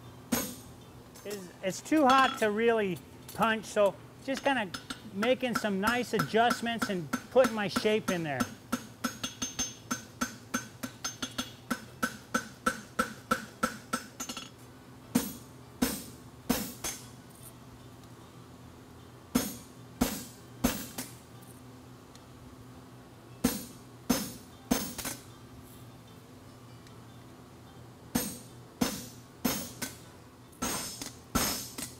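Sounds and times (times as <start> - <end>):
hammer striking metal on anvil: 2.0 - 2.5, 4.4 - 14.5, 30.6 - 31.9.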